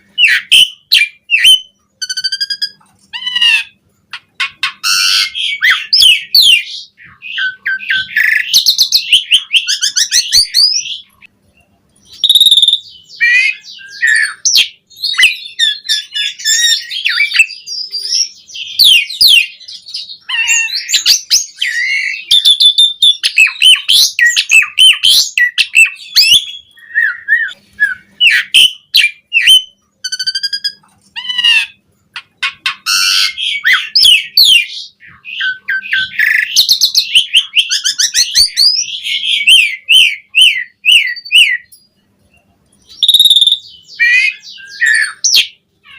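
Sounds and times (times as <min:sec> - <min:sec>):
starling singing varied song: 0:42.9 - 0:45.9.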